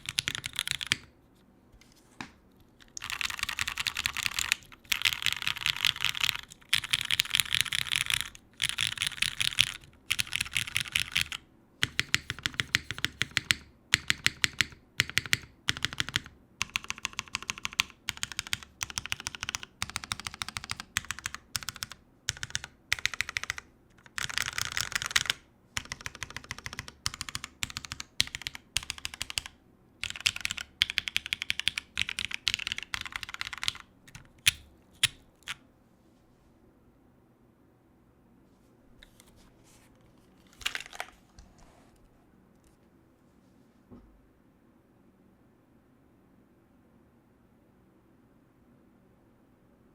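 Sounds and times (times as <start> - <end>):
fast typing on mechanical keyboard: 0.0 - 1.1, 2.8 - 35.6.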